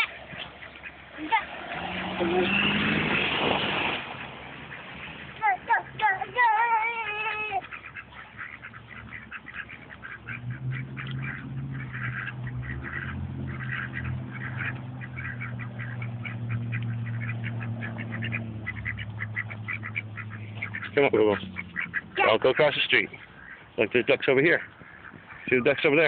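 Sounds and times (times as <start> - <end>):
ducks quacking: 0.0 - 26.0.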